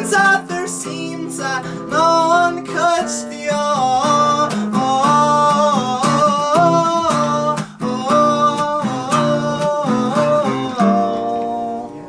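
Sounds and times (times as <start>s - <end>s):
acoustic guitar strumming: 0.0s - 12.0s.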